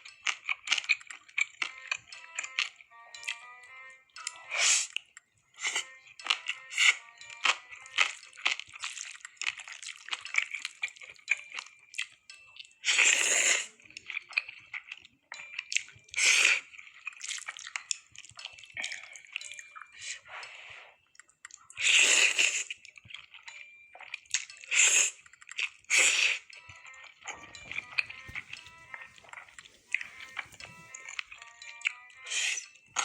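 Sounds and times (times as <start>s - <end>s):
food handling clicks and taps: 0.0s - 3.4s, 27.4s - 32.0s.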